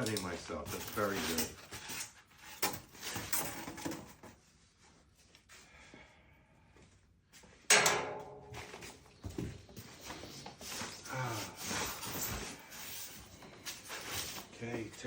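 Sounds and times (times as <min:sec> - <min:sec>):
cardboard rustling and scraping: 0:00.5 - 0:04.4.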